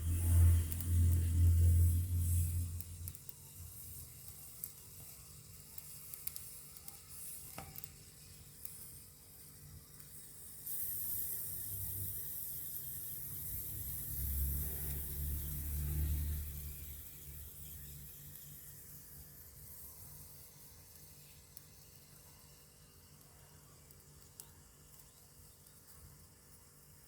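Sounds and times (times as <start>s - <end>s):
food sizzling: 0.0s - 22.6s
crackles and pops: 0.0s - 27.0s.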